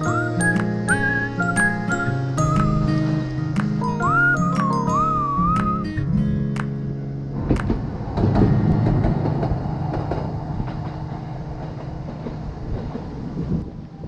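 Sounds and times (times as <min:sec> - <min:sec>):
vehicle engine rumbling: 0:07.2 - 0:13.4.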